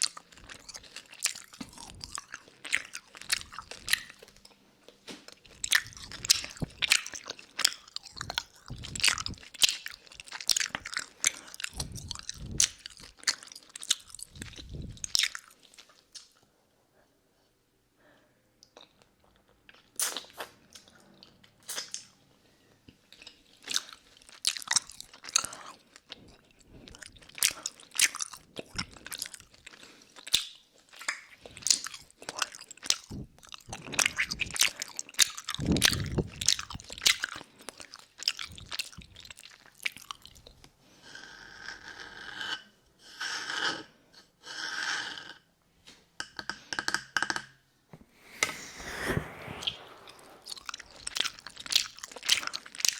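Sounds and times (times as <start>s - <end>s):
lollipop licking and crunching: 0.0s - 4.1s.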